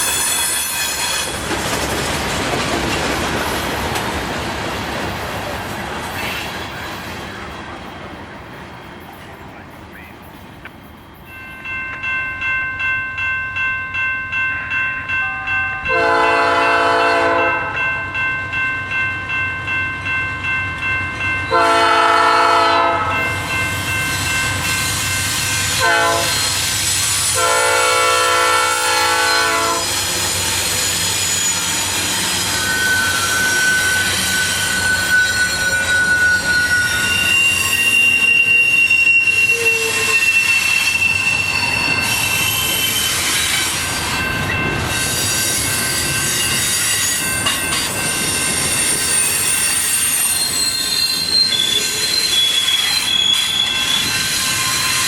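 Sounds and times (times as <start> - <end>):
train wheels squealing: 0.0 - 1.6, 6.0 - 7.4, 23.2 - 27.6, 29.1 - 55.0
bell ringing: 11.3 - 16.4
locomotive horn: 15.2 - 17.8, 21.5 - 23.4, 25.7 - 26.6, 27.3 - 30.0, 36.2 - 41.6.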